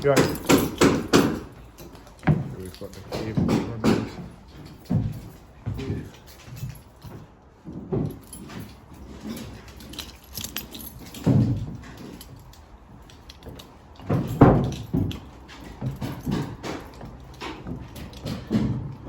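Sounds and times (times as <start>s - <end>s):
dull thumps and knocks: 0.0s - 6.1s, 13.5s - 19.0s
sharp clicks and clinks: 0.0s - 7.2s, 7.9s - 19.0s.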